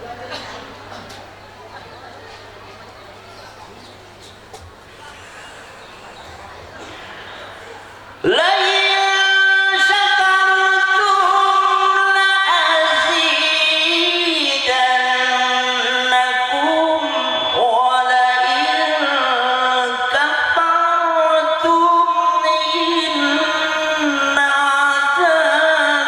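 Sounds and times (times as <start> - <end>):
man reciting in melodic style: 8.2 - 26.0.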